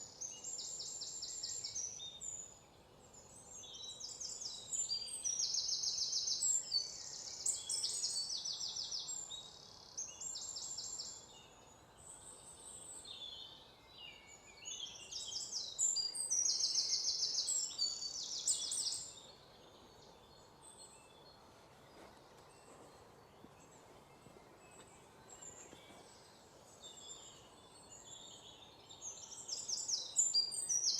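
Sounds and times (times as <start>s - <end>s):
birds chirping and trilling: 0.0s - 30.9s.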